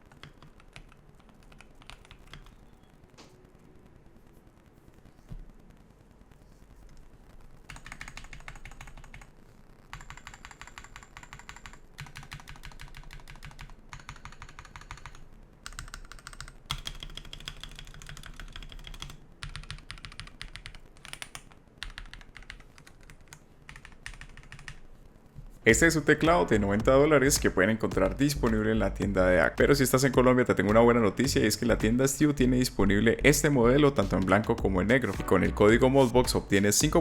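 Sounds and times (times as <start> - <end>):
rapid mechanical keyboard typing: 0.0 - 2.8, 7.6 - 9.3, 9.9 - 24.8.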